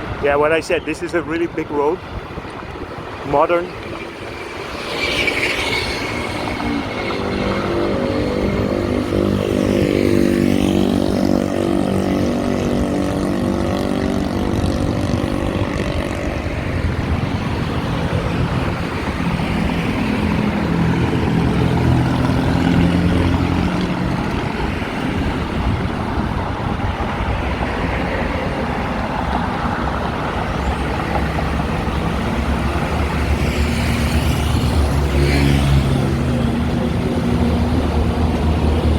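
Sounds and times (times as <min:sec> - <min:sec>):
heavy vehicle engines passing: 0:00.0 - 0:38.9
rumble of tyres and engines: 0:00.0 - 0:38.9.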